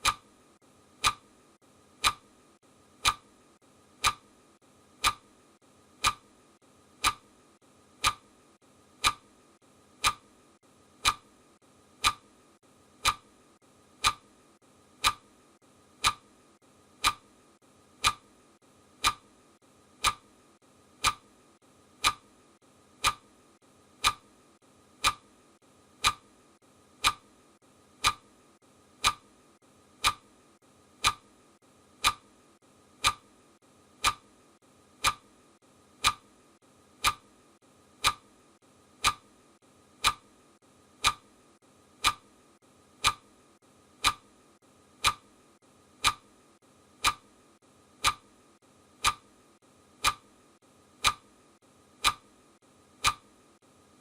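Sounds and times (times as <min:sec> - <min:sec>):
clock ticking: 0:00.0 - 0:00.3, 0:01.0 - 0:01.4, 0:02.0 - 0:02.4, 0:03.0 - 0:03.4, 0:04.0 - 0:04.4, 0:05.0 - 0:05.4, 0:06.0 - 0:06.3, 0:07.0 - 0:07.4, 0:08.0 - 0:08.3, 0:09.0 - 0:09.3, 0:10.0 - 0:10.3, 0:11.0 - 0:11.3, 0:12.0 - 0:12.3, 0:13.0 - 0:13.4, 0:14.0 - 0:14.4, 0:15.0 - 0:15.4, 0:16.0 - 0:16.4, 0:17.0 - 0:17.3, 0:18.0 - 0:18.4, 0:19.0 - 0:19.3, 0:20.0 - 0:20.3, 0:21.0 - 0:21.3, 0:22.0 - 0:22.3, 0:23.0 - 0:23.3, 0:24.0 - 0:24.3, 0:25.0 - 0:25.4, 0:26.0 - 0:26.3, 0:27.0 - 0:27.4, 0:28.0 - 0:28.3, 0:29.0 - 0:29.3, 0:30.0 - 0:30.4, 0:31.0 - 0:31.4, 0:32.0 - 0:32.3, 0:33.0 - 0:33.4, 0:34.0 - 0:34.3, 0:35.0 - 0:35.3, 0:36.0 - 0:36.4, 0:37.0 - 0:37.3, 0:38.0 - 0:38.3, 0:39.0 - 0:39.3, 0:40.0 - 0:40.3, 0:41.0 - 0:41.3, 0:42.0 - 0:42.4, 0:43.0 - 0:43.3, 0:44.0 - 0:44.3, 0:45.0 - 0:45.4, 0:46.0 - 0:46.3, 0:47.0 - 0:47.3, 0:48.0 - 0:48.3, 0:49.0 - 0:49.3, 0:50.0 - 0:50.4, 0:51.0 - 0:51.3, 0:52.0 - 0:52.4, 0:53.0 - 0:53.4.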